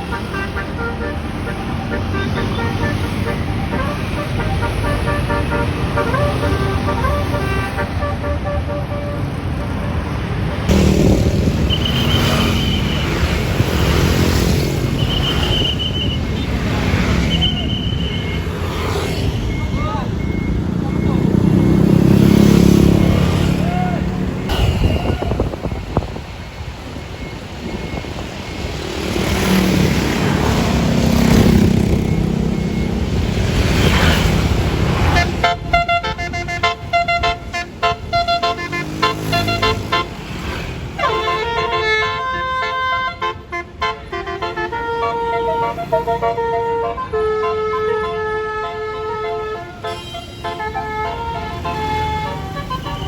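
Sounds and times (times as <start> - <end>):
multi-tone bus horn melody: 0.0 - 19.0, 33.2 - 53.0
bus engine passing: 0.0 - 53.0.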